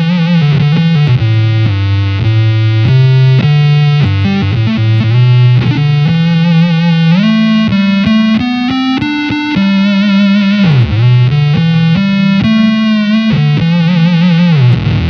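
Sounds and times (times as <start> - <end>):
buzzy synth guitar lead: 0.0 - 15.0.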